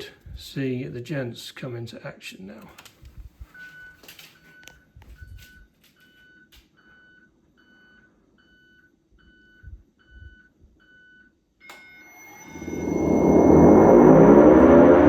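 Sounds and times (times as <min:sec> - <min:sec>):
siren winding up: 0:11.6 - 0:15.0
steady high whine: 0:11.6 - 0:15.0
short high electronic beeps: 0:11.7 - 0:15.0.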